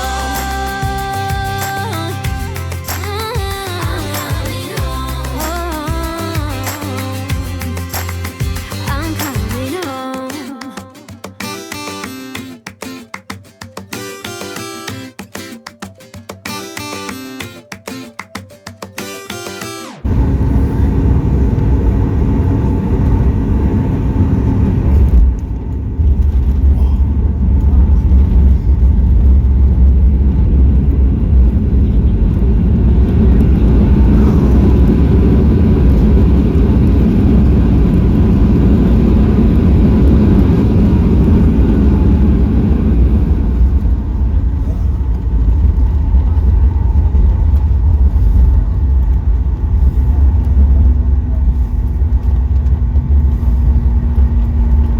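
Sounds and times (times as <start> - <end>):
airliner cabin engine rumble: 20.0 - 54.9.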